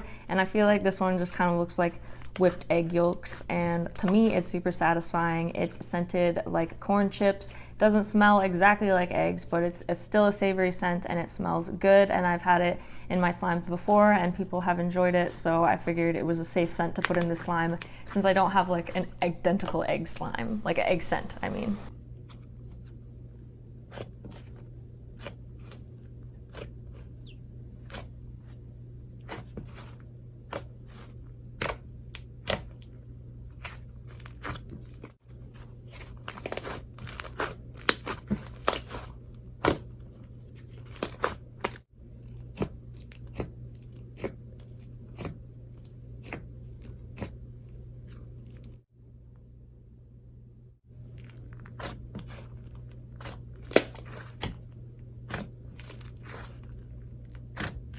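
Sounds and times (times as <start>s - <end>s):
low steady hum: 0.0s - 57.9s.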